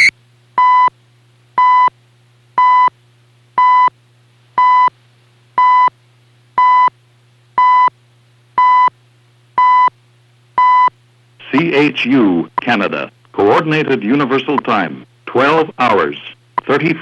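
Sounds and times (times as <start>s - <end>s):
radio time signal beeps: 0.0s - 0.9s, 11.5s - 11.8s
faint steady hum: 0.0s - 17.0s.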